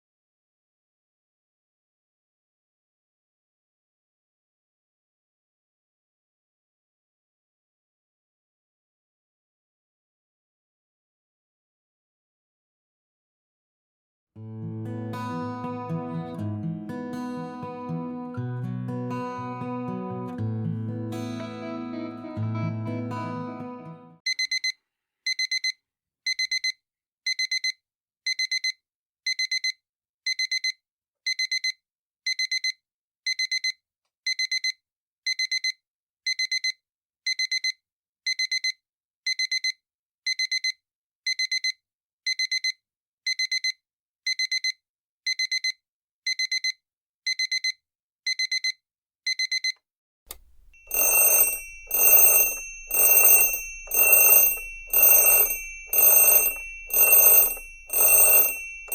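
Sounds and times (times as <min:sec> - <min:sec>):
alarm clock beeping: 0:50.7 - 0:58.9
pulsing ringing alarm tone: 0:50.8 - 0:58.9.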